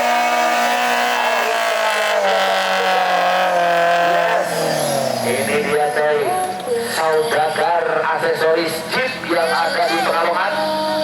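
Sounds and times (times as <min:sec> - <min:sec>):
off-road engine revving hard: 0:00.0 - 0:06.2.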